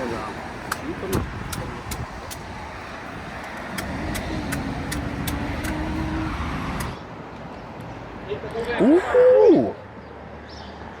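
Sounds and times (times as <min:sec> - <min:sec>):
motor vehicle humming: 0:00.0 - 0:10.7
light regular ticking: 0:00.5 - 0:06.0.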